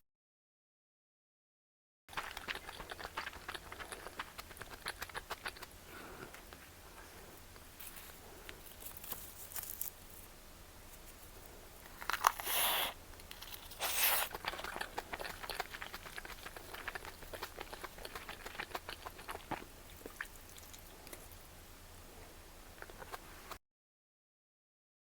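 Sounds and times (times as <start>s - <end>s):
food packaging crinkling: 2.1s - 6.5s, 7.8s - 10.3s, 11.8s - 21.4s.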